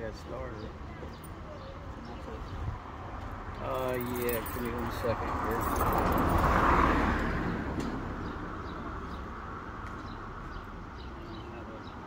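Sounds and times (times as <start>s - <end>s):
outdoor traffic background: 0.0s - 12.0s
vehicle passing: 2.4s - 11.1s.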